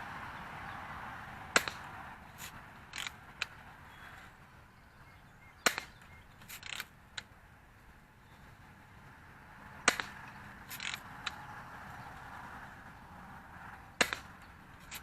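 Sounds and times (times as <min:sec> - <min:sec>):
bb gun shot snap: 0:01.6 - 0:01.9, 0:05.7 - 0:06.0, 0:09.9 - 0:10.2.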